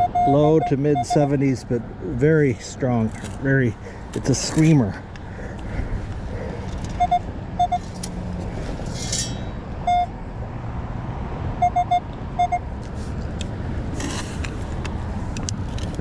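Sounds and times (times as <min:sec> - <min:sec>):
metal detector beeps: 0:00.0 - 0:01.3, 0:07.0 - 0:08.0, 0:09.3 - 0:10.1, 0:11.6 - 0:12.6.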